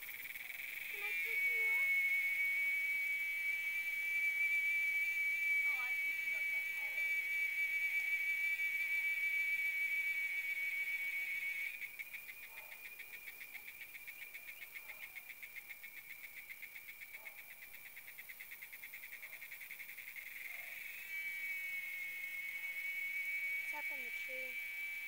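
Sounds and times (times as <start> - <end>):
cicada buzzing: 0.0 - 25.0.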